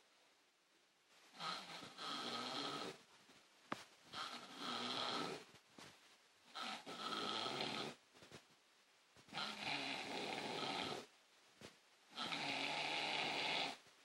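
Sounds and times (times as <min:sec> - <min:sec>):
quiet breaths: 0:00.0 - 0:14.0
man snoring: 0:01.5 - 0:03.0, 0:04.2 - 0:05.4, 0:06.6 - 0:08.0, 0:09.5 - 0:11.0, 0:12.2 - 0:13.8.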